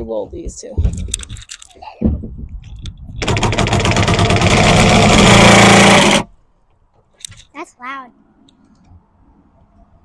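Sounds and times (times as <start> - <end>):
power tool rattling on bolt: 3.2 - 6.3.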